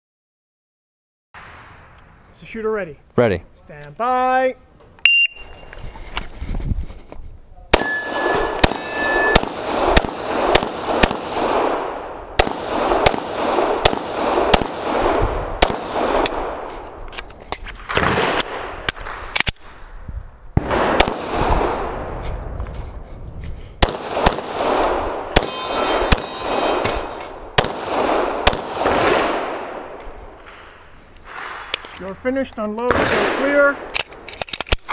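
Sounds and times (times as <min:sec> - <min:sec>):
pistol shots with echo: 0:07.7 - 0:16.7, 0:20.6 - 0:22.0, 0:23.8 - 0:30.7, 0:32.9 - 0:34.0
bullets ringing on steel targets: 0:07.8 - 0:09.4, 0:25.0 - 0:27.4.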